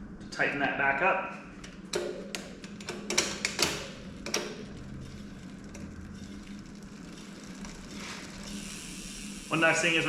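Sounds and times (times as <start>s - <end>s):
bike wheel spinning whir: 3.9s - 10.0s.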